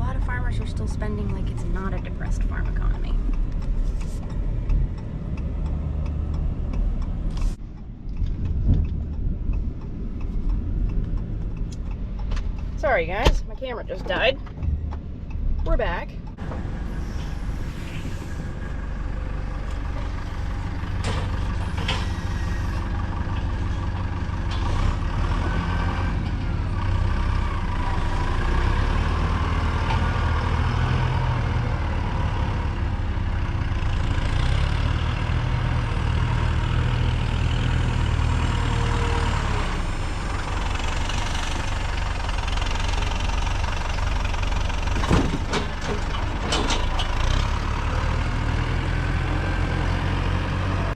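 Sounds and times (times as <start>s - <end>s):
vehicle engine droning: 0.0s - 50.9s
knocks and rattles: 44.2s - 47.5s.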